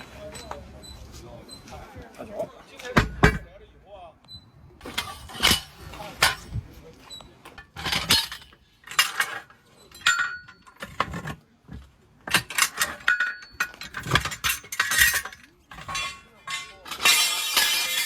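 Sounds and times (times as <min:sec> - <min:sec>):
tools striking metal: 0:12.4 - 0:18.0.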